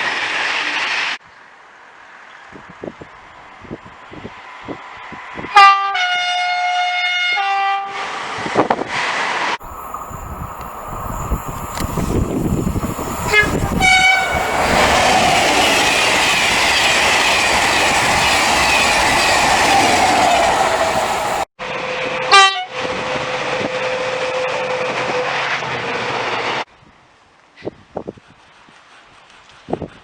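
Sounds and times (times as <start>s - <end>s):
train horn blasts: 5.5s - 8.1s, 11.3s - 16.0s, 21.8s - 25.5s
train running noise: 8.9s - 26.7s.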